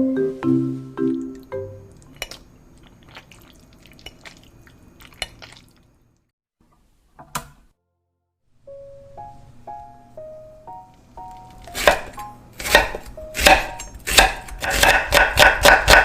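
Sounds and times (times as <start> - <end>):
wet squishes of food handled: 1.9 - 6.3.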